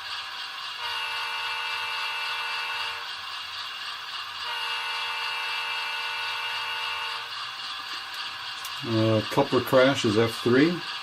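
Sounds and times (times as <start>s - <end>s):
model locomotive horn blasts: 0.8s - 3.1s, 4.4s - 7.4s.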